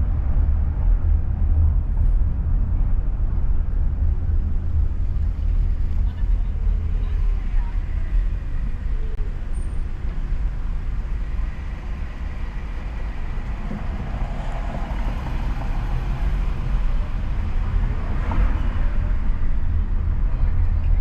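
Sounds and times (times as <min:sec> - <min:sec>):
car road and engine rumble: 0:00.0 - 0:21.0
faint passing vehicle noise: 0:05.1 - 0:21.0.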